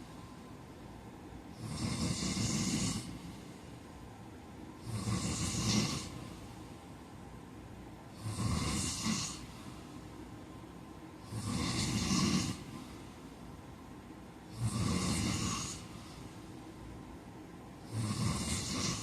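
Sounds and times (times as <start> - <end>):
quiet breathing: 0.0 - 19.0
man snoring: 1.5 - 3.4, 4.8 - 6.4, 8.1 - 9.6, 11.2 - 13.0, 14.5 - 16.2, 17.8 - 19.0.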